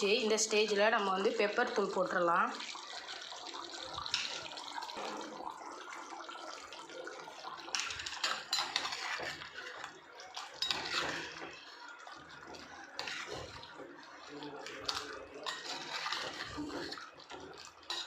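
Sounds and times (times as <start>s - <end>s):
spoon scraping clay pot: 14.8s - 17.1s.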